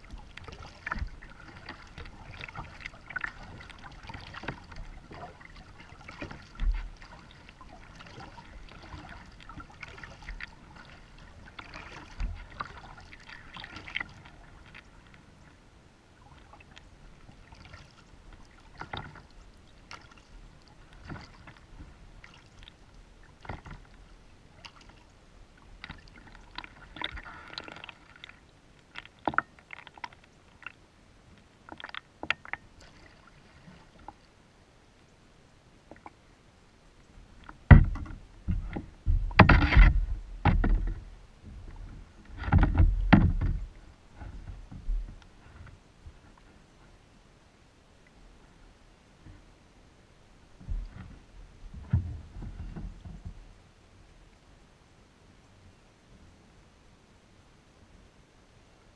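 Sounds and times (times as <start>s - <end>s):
light water wash: 0.0s - 55.6s
knocks and clicks from kayak hull: 18.8s - 19.2s, 23.4s - 23.9s, 37.4s - 46.2s, 50.6s - 53.5s
low thumps: 37.7s - 41.8s.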